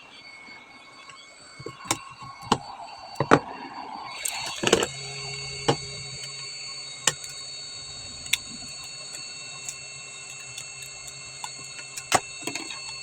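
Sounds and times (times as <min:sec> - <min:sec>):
steady background hum: 0:00.0 - 0:13.0
plastic pry tool clicking and snapping: 0:07.1 - 0:07.4, 0:08.3 - 0:13.0.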